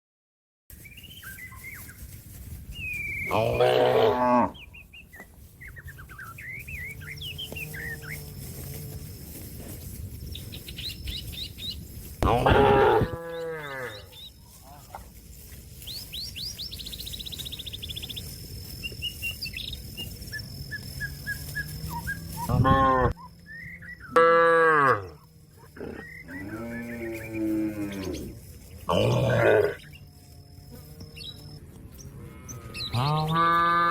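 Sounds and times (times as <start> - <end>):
birds chirping and trilling: 0.7 - 33.7
cattle mooing: 3.3 - 4.6, 12.2 - 14.1, 24.1 - 28.3, 28.9 - 29.8, 32.1 - 33.9.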